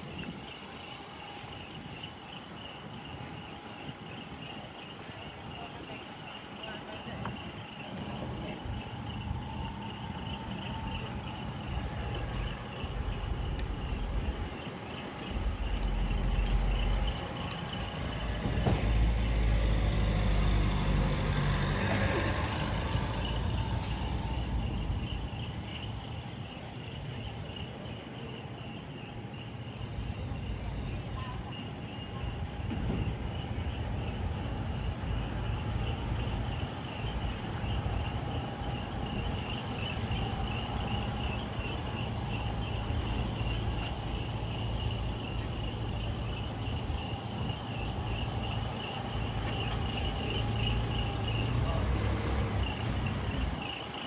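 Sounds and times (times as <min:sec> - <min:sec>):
crickets chirping: 0:00.0 - 0:54.0
traffic hum: 0:00.0 - 0:54.0
vehicle passing with low rumble: 0:15.2 - 0:25.9, 0:31.9 - 0:53.8.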